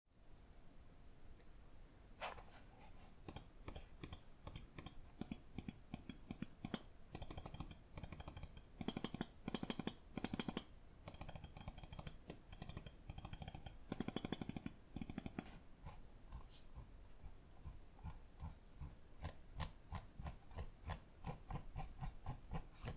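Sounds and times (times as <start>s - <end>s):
computer mouse clicking: 3.2s - 16.0s.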